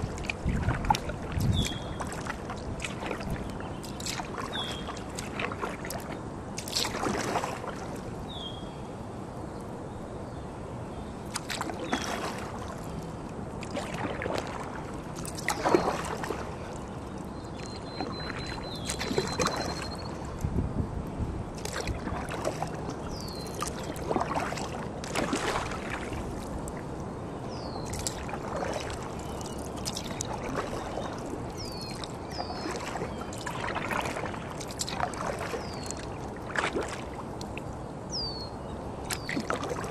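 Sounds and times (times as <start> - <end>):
water splashing and dripping: 0.0 - 8.2, 11.3 - 20.5, 21.6 - 27.1, 27.8 - 37.8, 39.0 - 39.9
paddle strokes through water: 0.0 - 8.7, 11.2 - 39.9.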